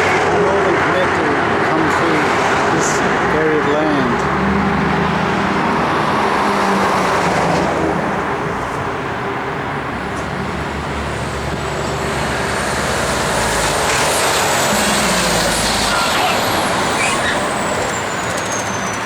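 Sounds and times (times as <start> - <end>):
car engine hum: 0.0 - 19.0.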